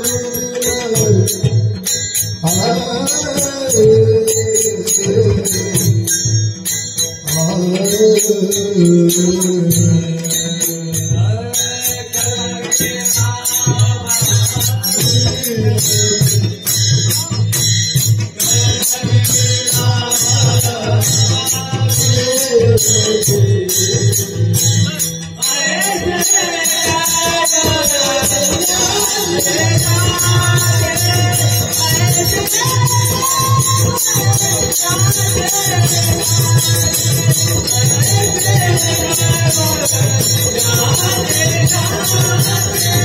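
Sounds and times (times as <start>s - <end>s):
jingling hand cymbals: 0.0s - 43.0s
wavering melody: 0.0s - 43.0s
drum fast rhythm: 10.9s - 43.0s.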